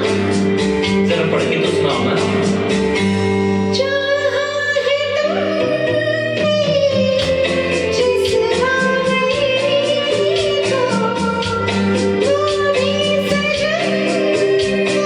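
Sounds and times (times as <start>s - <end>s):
instrumental accompaniment: 0.0s - 15.0s
woman singing: 3.6s - 15.0s.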